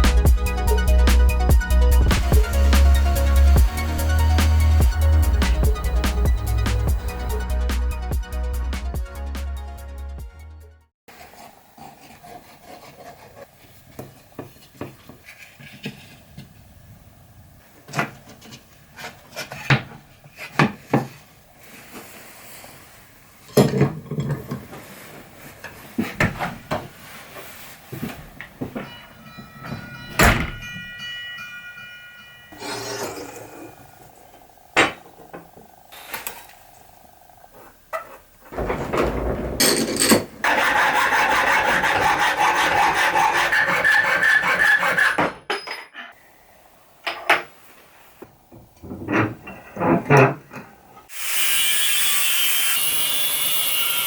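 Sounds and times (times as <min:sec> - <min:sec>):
knocks and clatters of wood and tools: 0:13.9 - 0:16.6, 0:17.8 - 0:21.3, 0:23.5 - 0:31.1, 0:37.5 - 0:41.6, 0:48.2 - 0:50.8.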